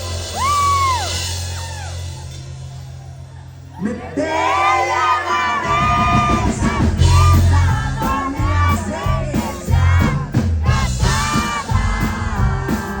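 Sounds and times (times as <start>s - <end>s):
accordion-led band music: 0.0s - 13.0s
pulsing bass line: 5.5s - 13.0s.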